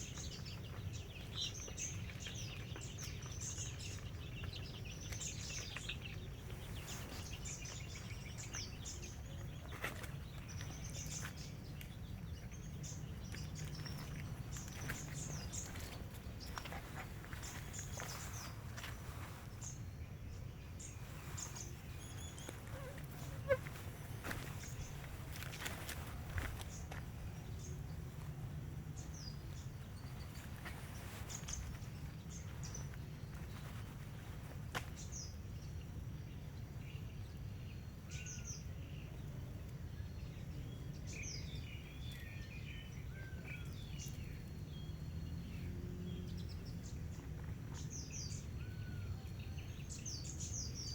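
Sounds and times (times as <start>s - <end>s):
birds chirping: 0.0s - 50.9s
low outdoor rumble: 0.0s - 50.9s.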